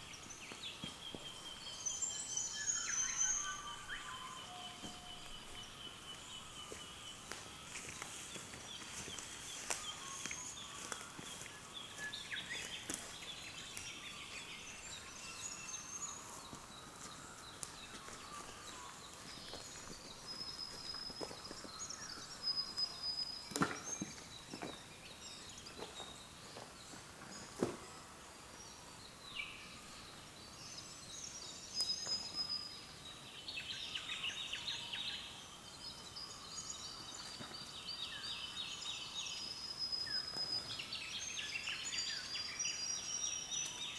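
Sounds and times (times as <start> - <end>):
birds chirping and singing: 0.0 - 27.6.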